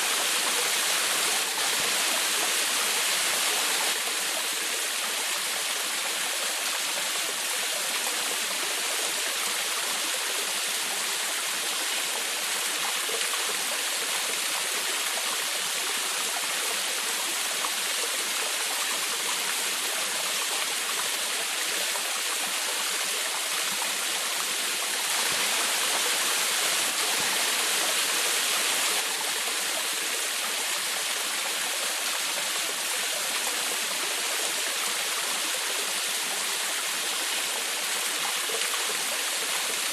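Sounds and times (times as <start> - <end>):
waterfall splashing: 16.3 - 39.9.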